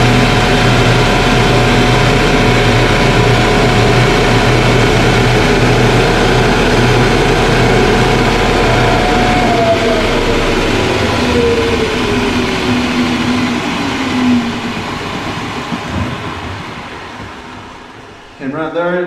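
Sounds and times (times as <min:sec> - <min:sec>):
floor sander whine: 0:00.0 - 0:18.5.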